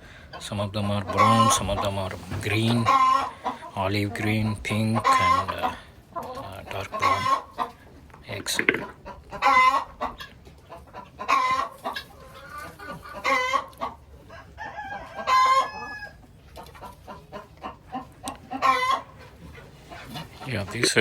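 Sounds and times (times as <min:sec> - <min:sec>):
chickens clucking: 0:00.0 - 0:21.0
chickens drawn-out calls: 0:00.0 - 0:21.0.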